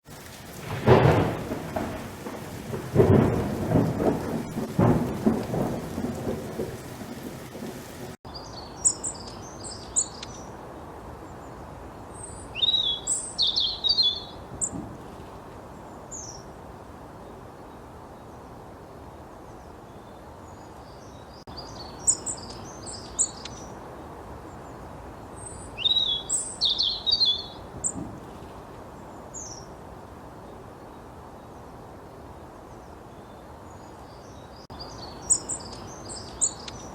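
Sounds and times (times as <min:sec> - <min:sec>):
faint steady hiss: 0:00.0 - 0:36.9
sparrows chirping: 0:08.3 - 0:10.5, 0:11.3 - 0:14.8, 0:19.9 - 0:23.8, 0:24.6 - 0:28.4, 0:33.2 - 0:36.9.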